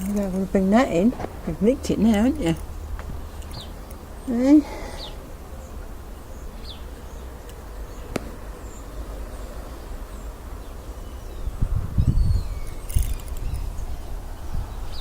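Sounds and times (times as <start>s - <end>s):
faint bird chirps: 3.3s - 5.7s
low gusty rumble: 7.8s - 15.0s.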